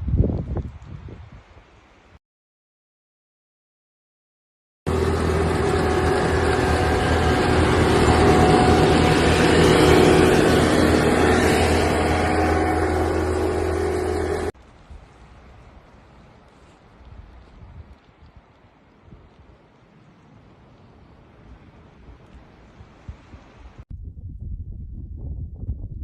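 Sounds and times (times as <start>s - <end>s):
vehicle engine running: 4.9s - 14.6s.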